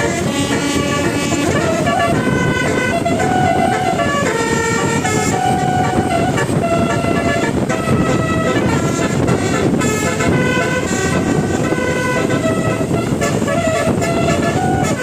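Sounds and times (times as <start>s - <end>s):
bus air horn melody: 0.0s - 15.0s.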